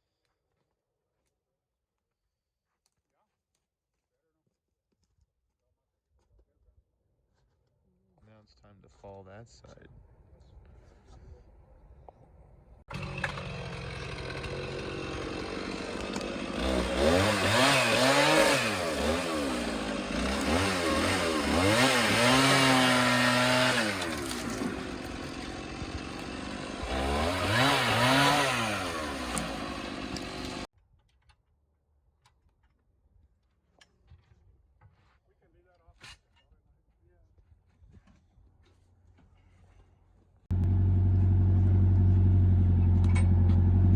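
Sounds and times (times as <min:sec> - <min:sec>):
chainsaw cutting tree trunk: 0:12.9 - 0:30.7.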